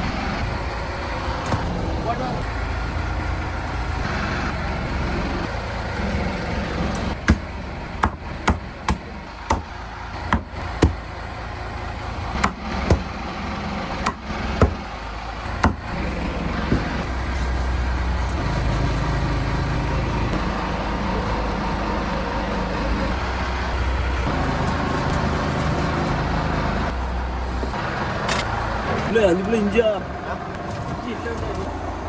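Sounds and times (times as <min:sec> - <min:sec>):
low engine drone: 0:00.0 - 0:32.0
sharp irregular knocks: 0:07.1 - 0:09.7, 0:10.3 - 0:11.0, 0:12.3 - 0:13.1, 0:14.0 - 0:14.9, 0:15.6 - 0:16.0.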